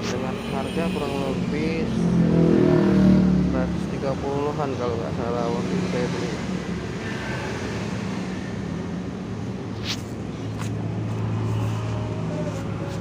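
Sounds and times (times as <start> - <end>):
low engine-like hum: 8.8 - 13.0.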